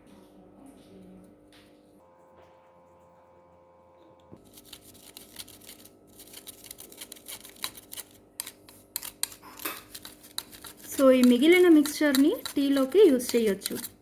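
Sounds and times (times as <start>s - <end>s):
kitchen sieve clicking and scraping: 4.4s - 14.0s.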